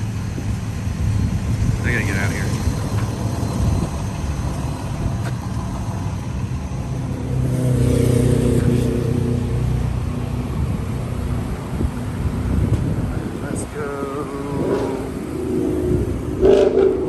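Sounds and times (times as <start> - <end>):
car driving past: 6.8 - 17.0.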